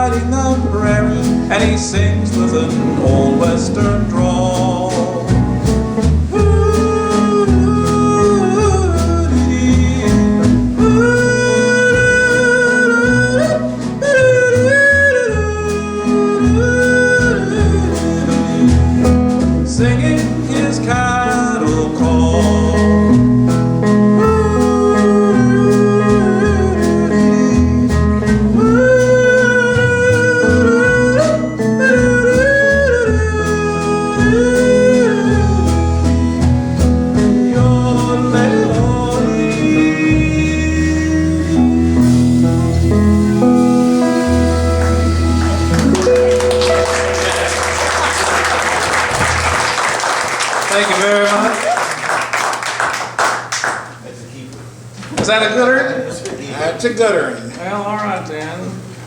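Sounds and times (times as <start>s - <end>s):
country song on plucked strings: 0.0s - 50.0s.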